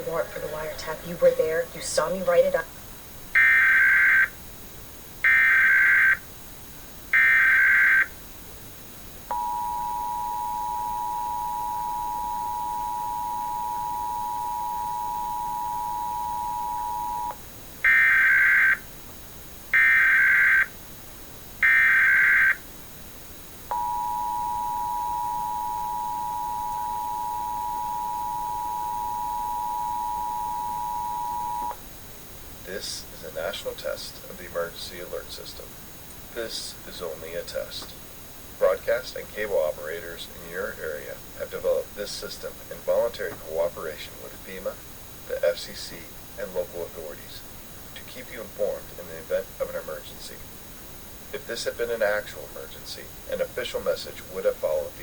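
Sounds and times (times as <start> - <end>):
two-tone attention signal: 9.3 - 17.4, 23.7 - 31.8.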